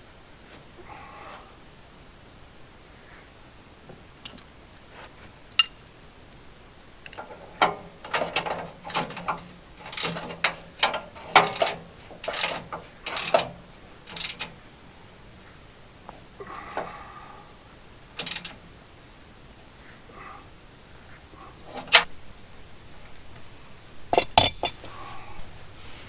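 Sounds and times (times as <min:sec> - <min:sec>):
ratchet wrench clicking: 0:07.1 - 0:14.5, 0:18.2 - 0:18.6
sharp metal click: 0:07.1 - 0:14.6, 0:18.2 - 0:18.6.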